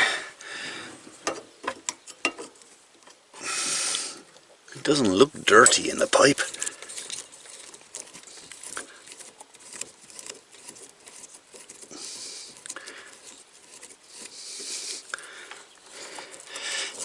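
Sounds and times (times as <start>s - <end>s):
hissy scrapes: 5.5s - 17.0s.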